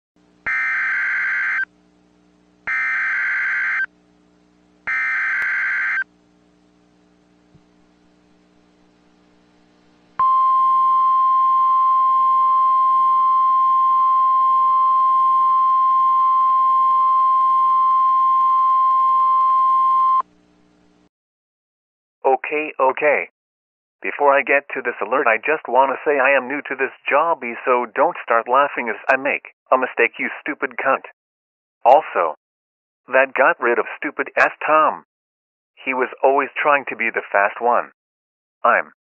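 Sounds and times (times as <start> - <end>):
steady high alarm tone: 0.5 - 1.7, 2.7 - 3.9, 4.9 - 6.1, 10.2 - 20.2
faint low hum: 3.9 - 13.2.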